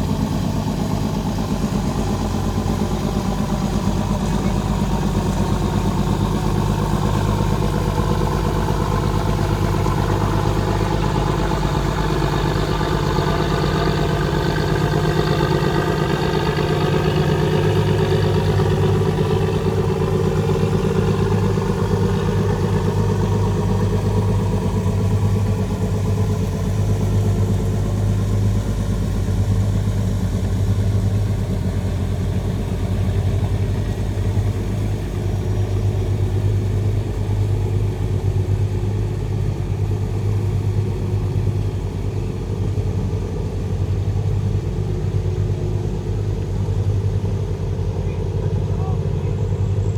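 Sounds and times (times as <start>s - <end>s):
boat engine humming: 0.0s - 49.9s.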